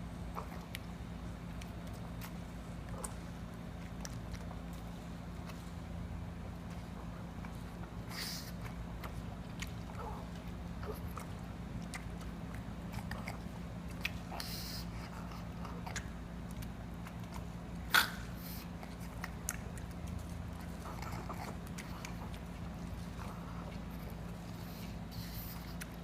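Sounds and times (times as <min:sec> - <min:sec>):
dog chewing watermelon: 0:00.1 - 0:26.0.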